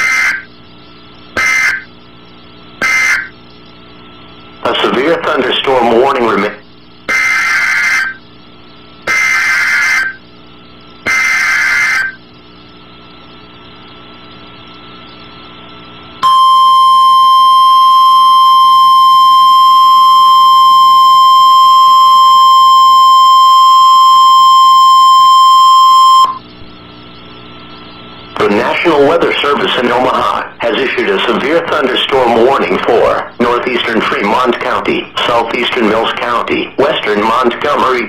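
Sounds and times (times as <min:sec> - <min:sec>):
faint radio hiss: 0:00.0 - 0:16.2, 0:26.4 - 0:38.0
steady warning alarm tone: 0:00.0 - 0:37.8
screechy digital data bursts: 0:00.0 - 0:38.0.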